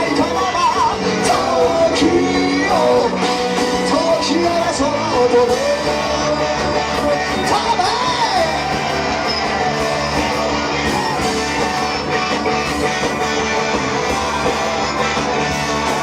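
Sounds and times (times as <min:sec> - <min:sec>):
person singing: 0:00.0 - 0:10.1
live rock band playing: 0:00.0 - 0:16.0.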